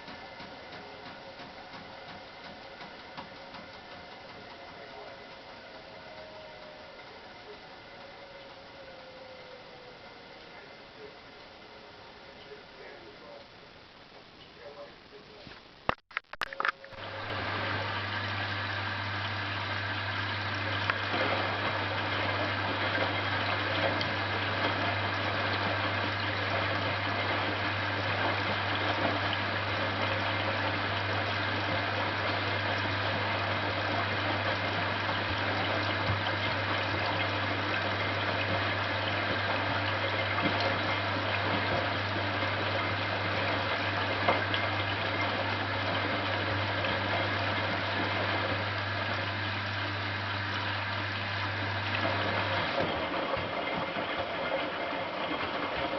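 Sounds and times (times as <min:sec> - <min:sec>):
washing machine drain pump: 0:00.0 - 0:13.4, 0:16.8 - 0:55.9
water rushing: 0:16.9 - 0:55.9.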